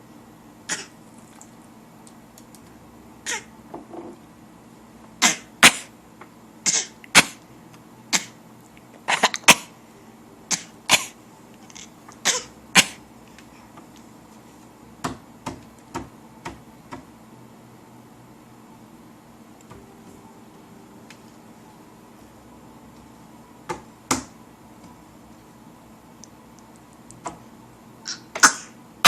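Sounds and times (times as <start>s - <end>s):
baby coughing: 0.7s - 1.0s, 3.2s - 3.5s, 5.2s - 5.9s, 6.6s - 7.4s, 8.1s - 8.4s, 9.1s - 9.7s, 10.5s - 13.0s, 28.0s - 28.8s.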